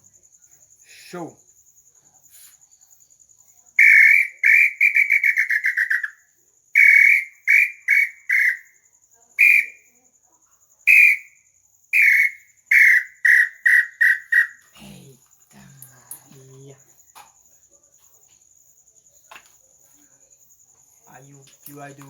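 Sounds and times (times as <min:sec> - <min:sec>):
wooden bird-call whistle: 0:03.8 - 0:06.2, 0:06.8 - 0:08.8, 0:09.4 - 0:09.9, 0:10.9 - 0:14.6.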